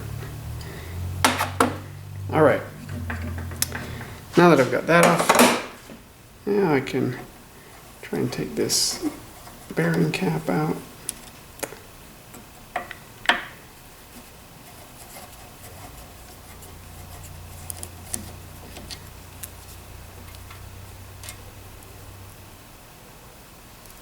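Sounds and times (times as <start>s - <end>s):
faint low hum: 0.0s - 12.4s.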